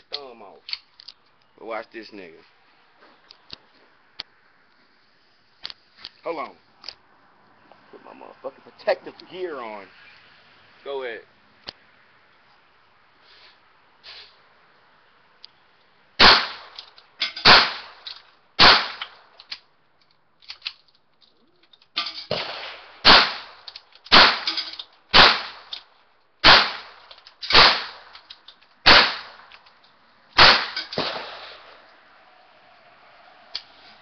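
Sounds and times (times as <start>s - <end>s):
gunshots: 16.2s - 16.8s, 17.4s - 18.0s, 18.6s - 19.1s, 22.3s - 25.7s, 26.4s - 28.1s, 28.8s - 29.5s, 30.4s - 31.8s.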